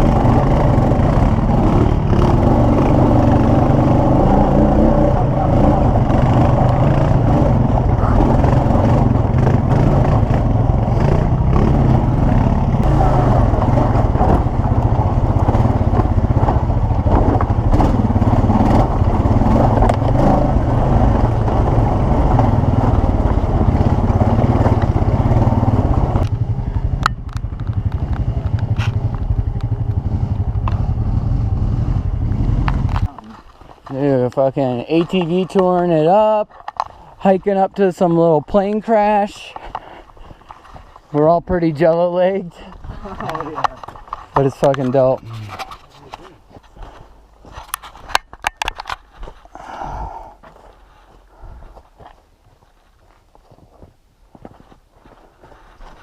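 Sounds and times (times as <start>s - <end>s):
atv engine running: 0.0s - 37.3s.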